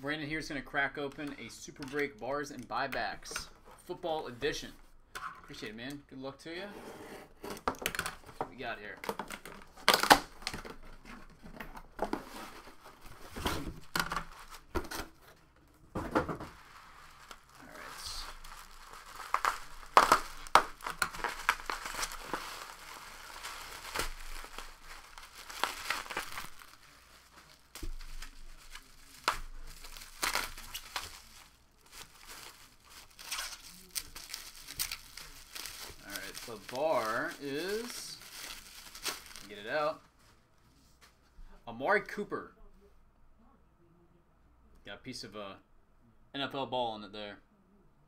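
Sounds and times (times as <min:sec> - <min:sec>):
plastic wrapping crinkling and tearing: 0:07.6 - 0:15.3, 0:16.4 - 0:40.0.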